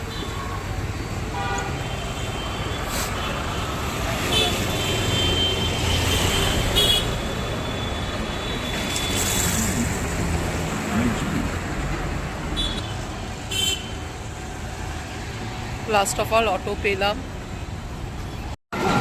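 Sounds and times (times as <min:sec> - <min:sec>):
traffic rumble: 0:00.0 - 0:19.0
vehicle horn toots: 0:04.3 - 0:09.6, 0:12.6 - 0:14.0.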